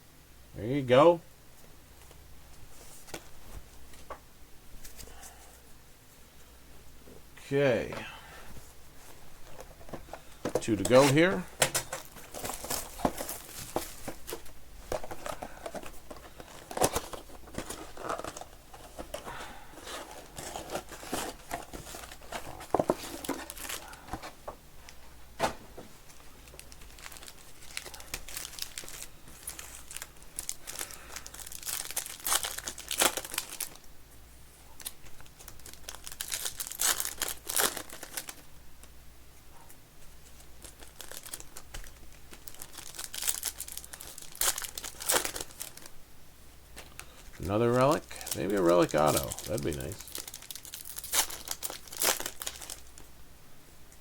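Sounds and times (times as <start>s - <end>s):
plastic wrapping tearing: 26.1s - 33.8s, 34.8s - 38.4s, 40.6s - 45.9s, 47.8s - 53.0s.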